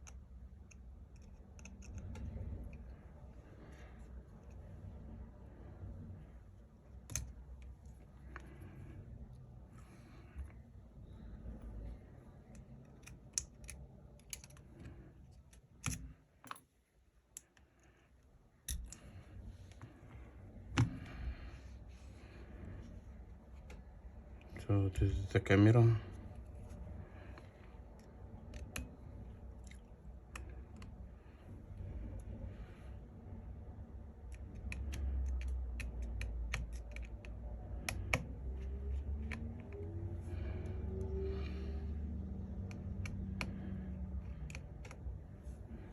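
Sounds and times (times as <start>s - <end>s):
small tools clicking and tapping: 0.0s - 3.0s, 12.4s - 16.7s, 18.6s - 19.1s, 34.2s - 41.5s
steady low hum: 0.0s - 45.9s
small tool clicks and taps: 34.3s - 38.3s.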